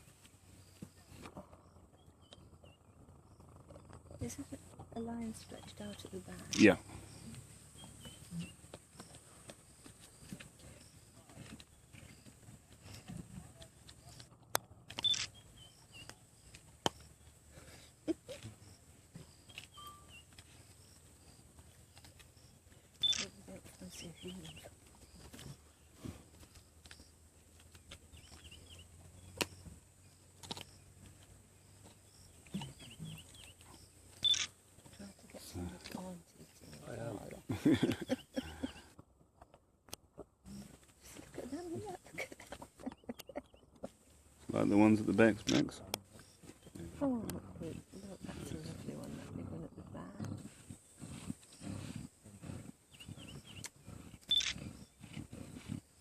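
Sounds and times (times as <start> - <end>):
small birds chirping: 0.0 - 39.6, 40.2 - 56.0
lions growling: 1.0 - 14.5, 40.4 - 56.0.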